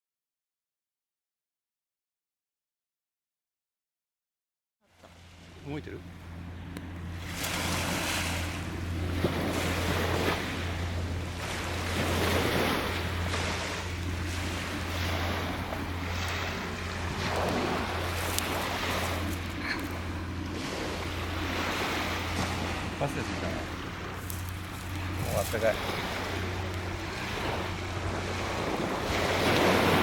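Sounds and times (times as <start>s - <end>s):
wind rumble on microphone: 6.7s - 30.0s
waves washing onto sand: 6.8s - 30.0s.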